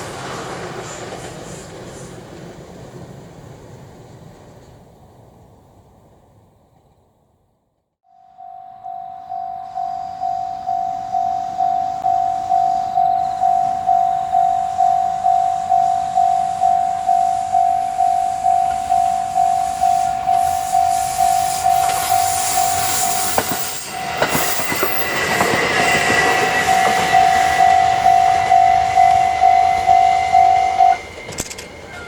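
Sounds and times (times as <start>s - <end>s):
train wheel noise: 0.0s - 7.0s, 8.8s - 32.0s
level crossing bell ringing: 8.1s - 24.2s, 25.0s - 32.0s
thin high whine: 8.1s - 32.0s.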